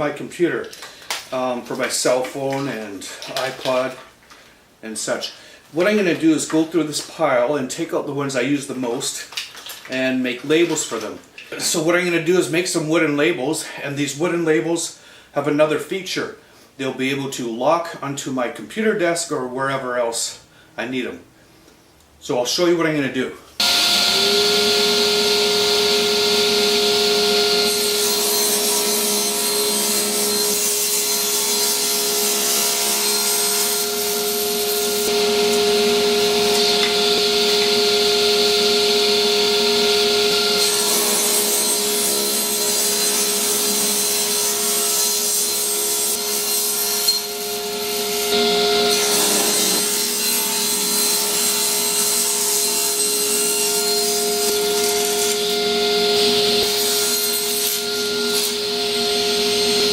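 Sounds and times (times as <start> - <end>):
electric power tool cutting wood: 23.6 - 59.9.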